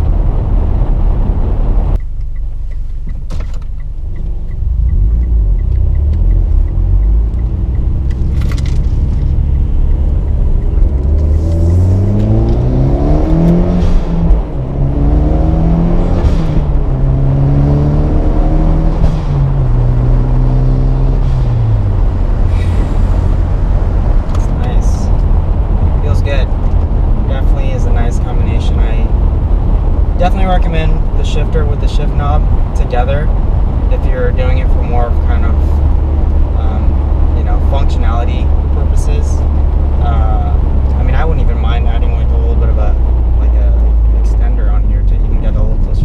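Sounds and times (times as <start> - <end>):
car engine accelerating: 0.0 - 46.0
deep road rumble: 0.0 - 46.0.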